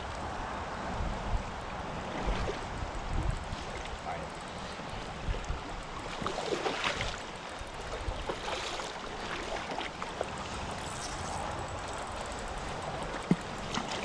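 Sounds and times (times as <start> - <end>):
river water running: 0.0 - 14.0
small water splashes: 2.0 - 2.8, 4.6 - 11.6, 12.9 - 14.0.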